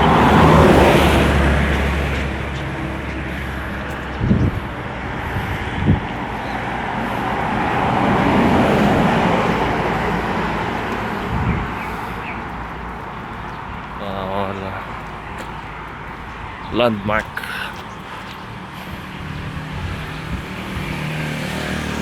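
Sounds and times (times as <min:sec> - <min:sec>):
motor vehicle passing: 0:00.0 - 0:22.0
road traffic noise: 0:00.0 - 0:22.0.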